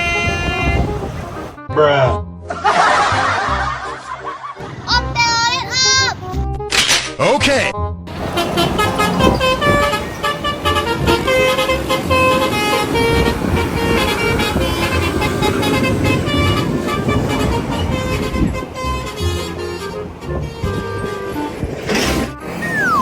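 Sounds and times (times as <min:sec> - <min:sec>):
bus musical horn tune: 0:00.0 - 0:01.8, 0:08.1 - 0:23.0.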